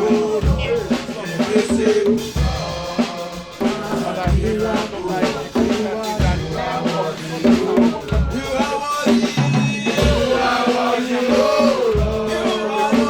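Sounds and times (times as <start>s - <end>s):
heavy bass drum hits: 0.0s - 6.8s
drum kit beat: 0.0s - 13.0s.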